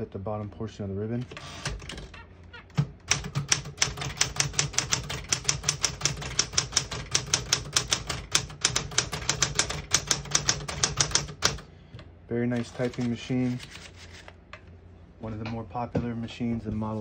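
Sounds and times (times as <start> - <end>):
typewriter keys clacking: 2.7 - 11.6, 12.6 - 13.9.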